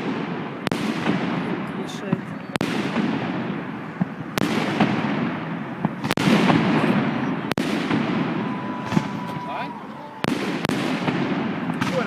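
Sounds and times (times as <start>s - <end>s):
crackle of firework pops: 0.0s - 1.4s, 2.1s - 3.4s, 4.0s - 6.8s, 10.3s - 12.0s
firework bangs: 0.0s - 12.0s.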